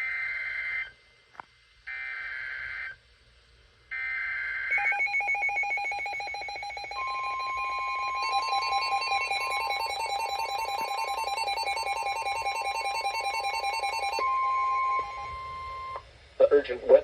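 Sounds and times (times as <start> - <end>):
fast-pulsing electronic alarm: 4.0 - 16.0
steady warning tone: 4.7 - 16.7.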